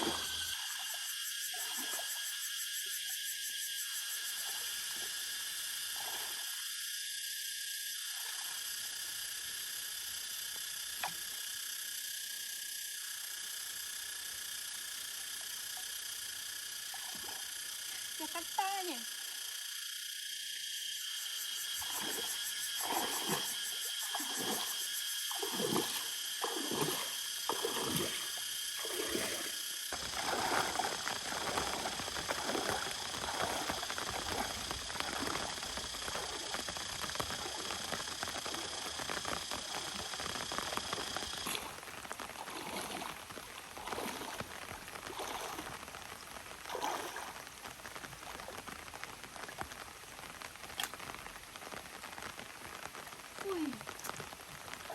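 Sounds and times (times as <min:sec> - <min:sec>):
water splashing: 0:00.0 - 0:02.2, 0:21.8 - 0:54.9.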